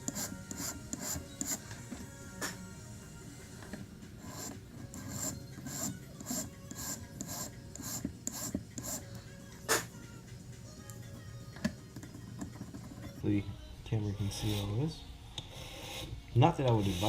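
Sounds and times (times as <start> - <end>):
hand file rasping: 0.0 - 1.7, 4.2 - 9.0, 15.4 - 17.0.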